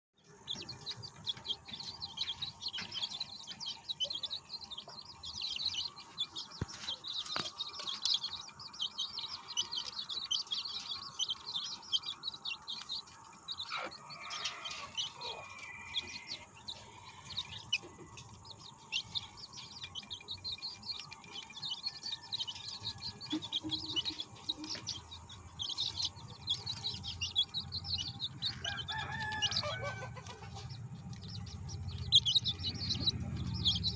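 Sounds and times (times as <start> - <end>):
chicks peeping: 0.2 - 33.9.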